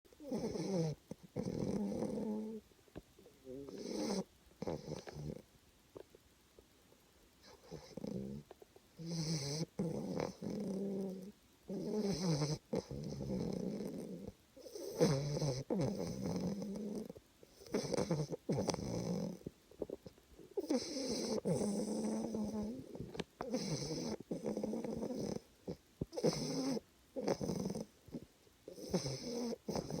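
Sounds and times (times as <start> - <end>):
loud whiny snoring: 0.2 - 2.6, 3.4 - 5.4, 7.4 - 8.4, 9.0 - 19.5, 20.6 - 30.0.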